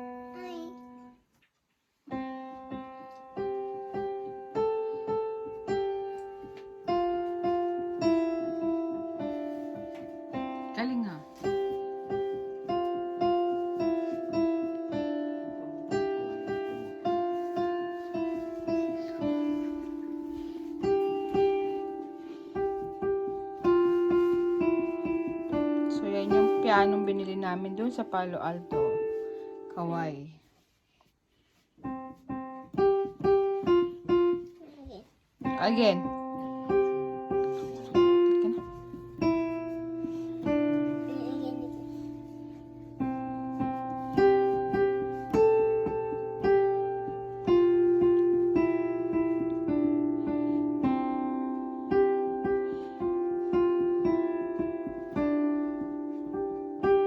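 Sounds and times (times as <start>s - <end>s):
slow piano melody: 0.0s - 30.7s, 31.7s - 57.0s.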